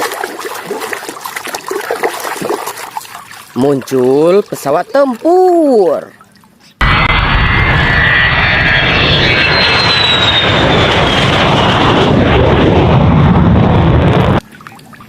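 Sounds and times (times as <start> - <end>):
jet engine whine: 6.8 - 14.4.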